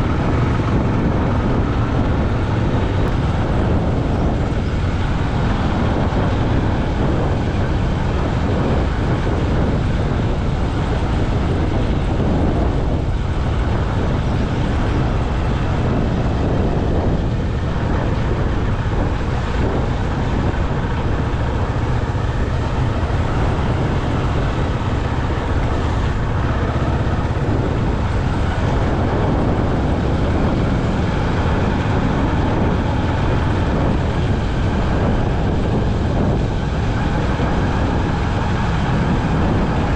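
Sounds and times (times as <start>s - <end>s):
motorcycle engine running: 0.0s - 39.9s
road and wind noise: 0.0s - 39.9s.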